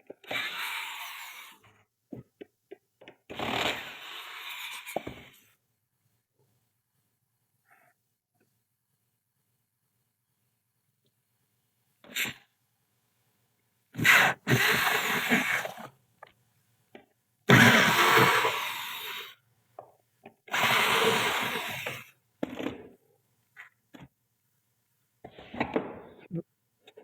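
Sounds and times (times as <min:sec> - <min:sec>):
small power tool running: 0:20.6 - 0:22.0.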